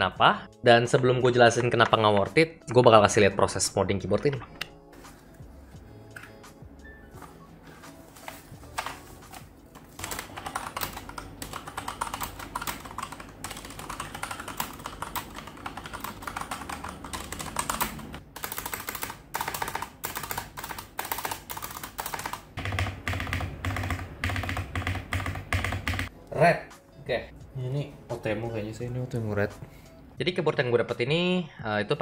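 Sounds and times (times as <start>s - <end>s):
mechanical keyboard typing: 9.9s - 26.1s.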